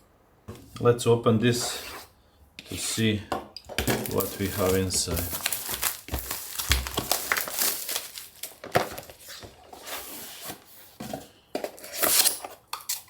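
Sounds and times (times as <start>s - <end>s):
cardboard and plastic knocks: 3.7s - 7.5s
packaging rustling: 3.8s - 10.8s.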